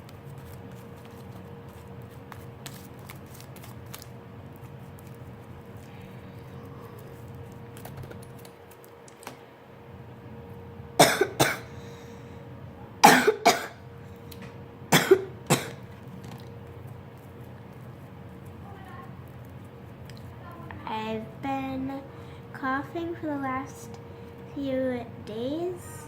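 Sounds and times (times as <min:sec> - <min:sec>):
person coughing: 0:11.0 - 0:11.7, 0:13.0 - 0:13.8, 0:14.9 - 0:15.8.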